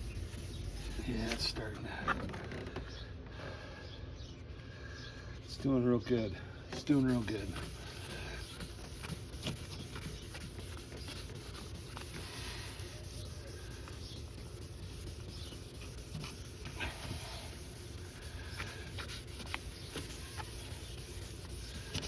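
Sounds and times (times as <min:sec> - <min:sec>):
sandpaper scratching on plastic: 0:00.0 - 0:02.6, 0:06.8 - 0:22.0.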